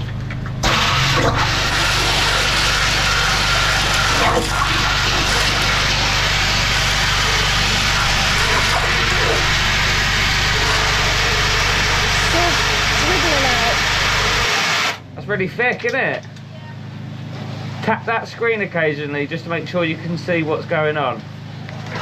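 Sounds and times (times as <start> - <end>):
engine hum: 0.0 - 22.0
water rushing in a pipe: 0.6 - 15.0.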